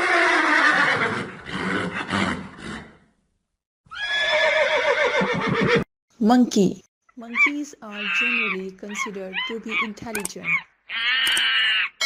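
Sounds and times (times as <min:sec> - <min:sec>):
horse whinnying: 0:00.0 - 0:03.0, 0:03.9 - 0:05.9, 0:10.9 - 0:12.0.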